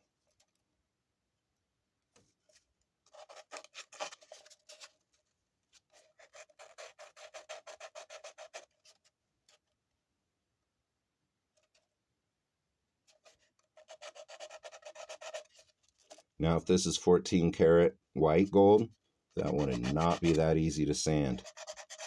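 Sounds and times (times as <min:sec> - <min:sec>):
sandpaper rubbing on metal ring: 0:13.8 - 0:15.6, 0:19.4 - 0:22.0.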